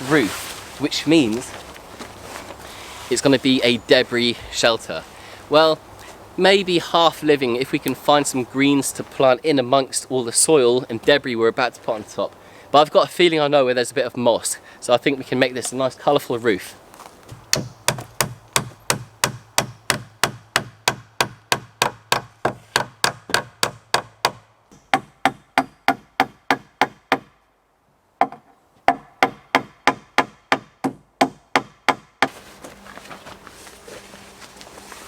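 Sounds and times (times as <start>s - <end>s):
hammer striking wood: 17.5s - 27.4s, 28.2s - 32.3s.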